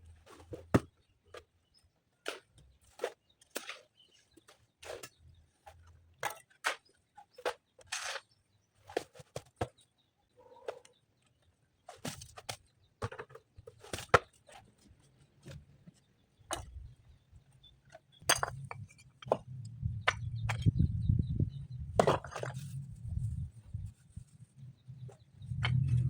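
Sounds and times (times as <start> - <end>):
stones and hand tools knocking: 16.5 - 16.9, 17.9 - 21.0, 22.0 - 22.7
low rumble: 25.4 - 26.0.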